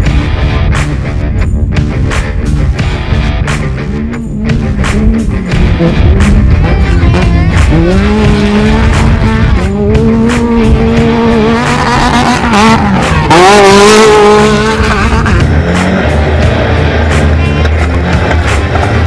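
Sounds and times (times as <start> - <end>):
buggy engine revving high: 1.8 - 19.0
loud rush of noise: 4.6 - 19.0.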